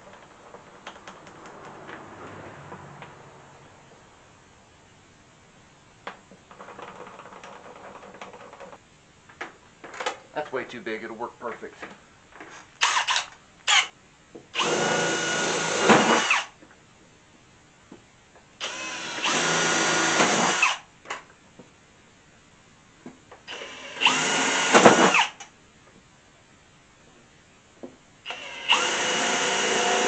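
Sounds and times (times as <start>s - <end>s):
power drill motor whine: 12.8s - 13.9s, 14.6s - 16.5s, 18.6s - 20.8s, 23.5s - 25.4s, 28.3s - 30.0s.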